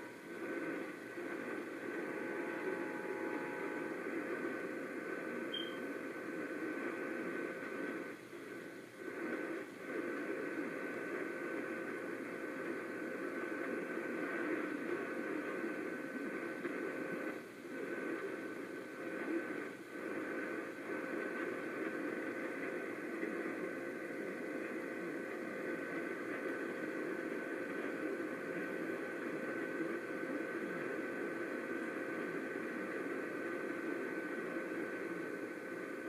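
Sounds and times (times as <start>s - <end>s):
faint steady whistles: 0.0s - 7.9s
radio static hiss: 0.0s - 36.0s.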